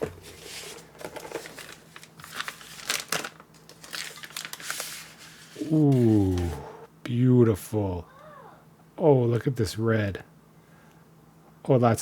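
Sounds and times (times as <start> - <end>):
packaging crinkling and rustling: 0.0 - 6.4.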